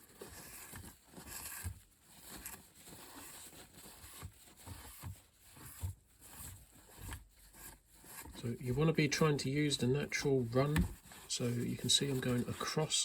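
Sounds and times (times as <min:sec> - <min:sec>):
tissue rubbing on model: 0:00.0 - 0:13.0
light handling knocks: 0:10.6 - 0:11.2.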